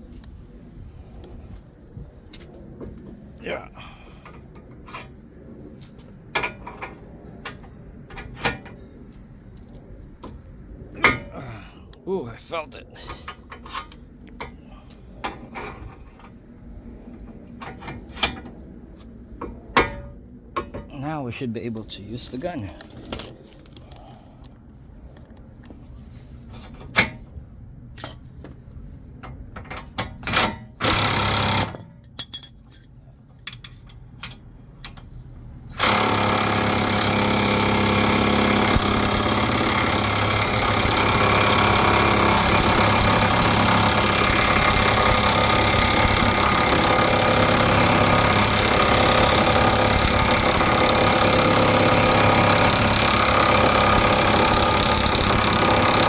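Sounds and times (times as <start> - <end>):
impact wrench hammering: 30.8 - 31.8, 35.8 - 56.0
tool clatter: 35.8 - 56.0.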